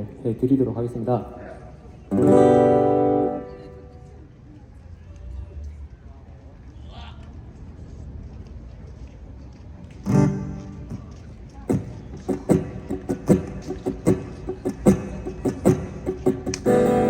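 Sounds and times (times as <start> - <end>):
acoustic guitar chord strummed: 2.1 - 4.1, 10.1 - 11.1, 11.7 - 17.0
percussive guitar strokes: 10.1 - 11.1, 11.7 - 17.0.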